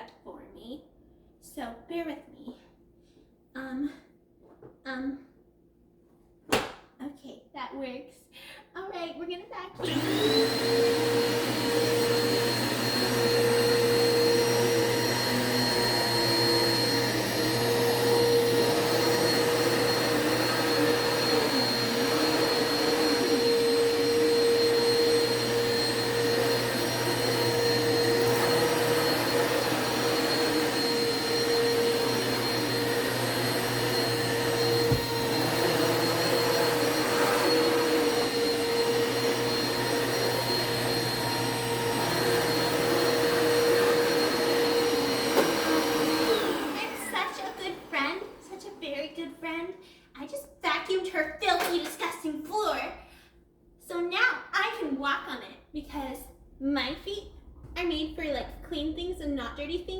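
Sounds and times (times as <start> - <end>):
vacuum cleaner running: 9.8 - 49.6, 51.5 - 52.0.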